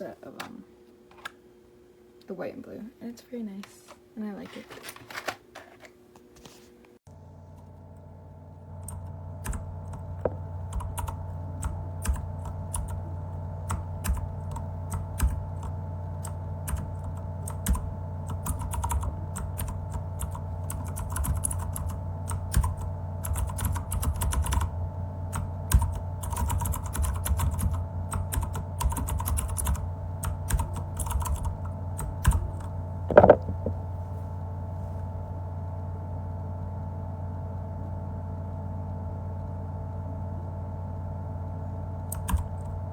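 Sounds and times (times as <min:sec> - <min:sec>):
low hum: 0:07.1 - 0:18.3, 0:31.7 - 0:42.9
mechanical keyboard typing: 0:08.8 - 0:13.0, 0:13.7 - 0:24.7, 0:25.3 - 0:33.7, 0:42.1 - 0:42.7
loud knock: 0:33.1 - 0:33.8.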